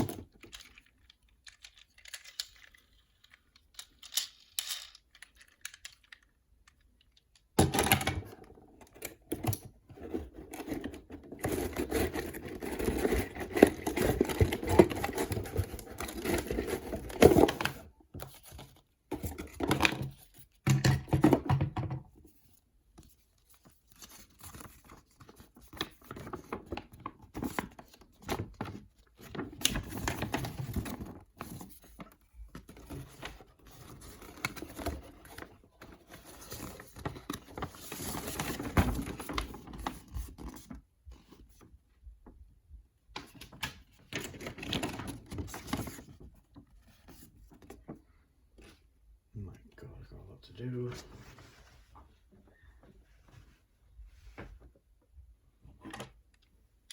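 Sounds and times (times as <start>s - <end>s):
toy packaging rustling and tearing: 0.0s - 7.6s, 8.9s - 20.4s, 23.5s - 40.8s.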